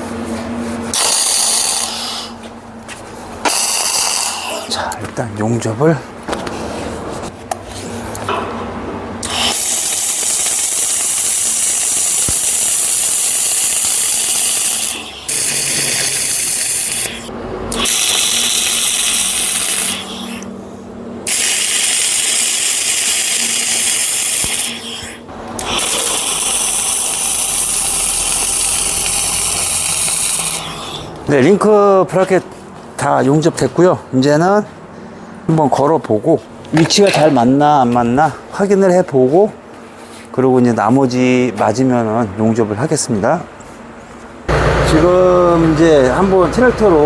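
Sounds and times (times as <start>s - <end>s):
arc welding hiss: 1.0s - 2.4s, 3.4s - 4.8s, 9.2s - 20.5s, 21.3s - 31.1s.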